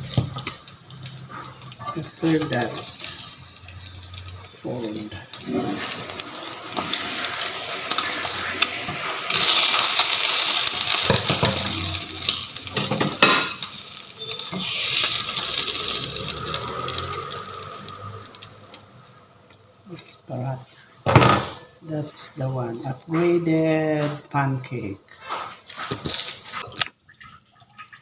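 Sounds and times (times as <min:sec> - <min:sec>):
pancake sizzling in oil: 0:00.0 - 0:19.4, 0:25.2 - 0:26.7.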